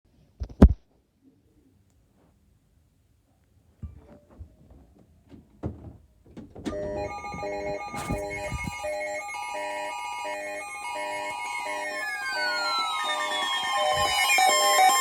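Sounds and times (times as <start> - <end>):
knocks and handling noises: 3.8 - 8.9
phone emergency alert alarm: 6.7 - 15.0.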